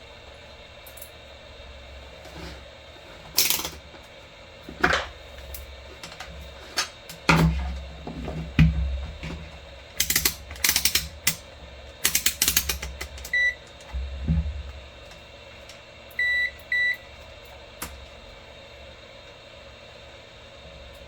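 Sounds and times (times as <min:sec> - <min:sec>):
multimeter beeps: 0:13.3 - 0:13.6, 0:16.2 - 0:17.0.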